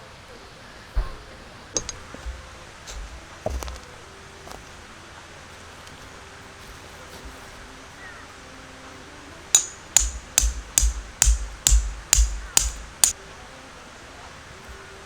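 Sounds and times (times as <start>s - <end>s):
sharp knocks with dull thumps: 9.6s - 13.2s.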